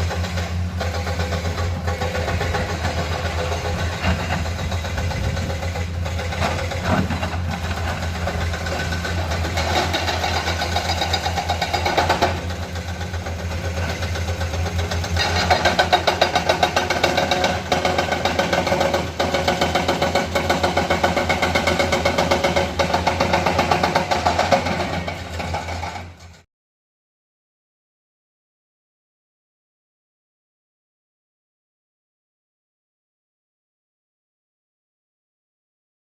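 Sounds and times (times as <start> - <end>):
excavator diesel engine running: 0.0 - 26.4.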